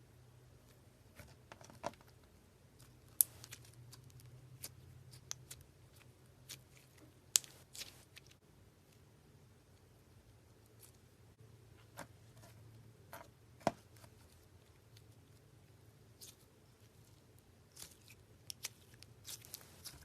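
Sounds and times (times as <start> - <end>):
slime crackling and popping: 3.1 - 8.0.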